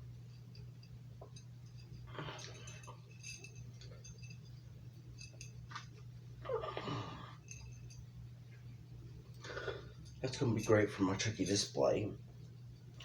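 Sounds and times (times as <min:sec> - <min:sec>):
low steady hum: 0:00.0 - 0:13.0
metal medallion clinking: 0:00.6 - 0:05.9.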